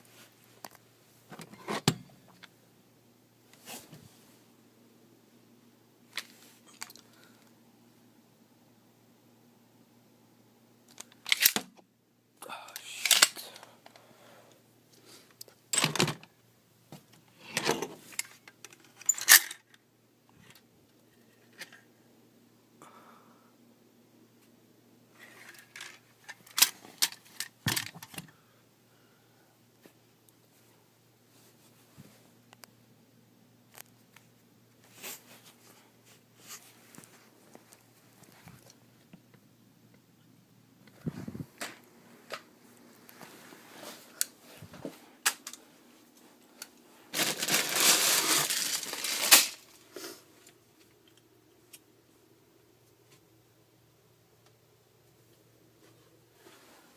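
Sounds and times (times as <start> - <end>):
crinkling rustle: 41.4 - 51.8
hard objects rattling: 47.2 - 49.6.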